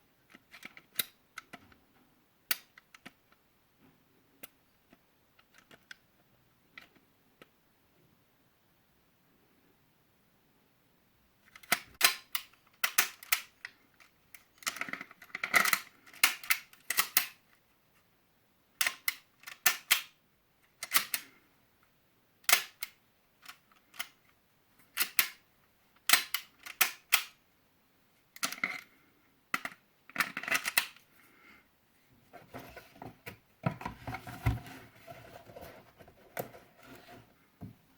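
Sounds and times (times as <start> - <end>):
pistol metallic clicks and clacks: 26.1 - 27.4.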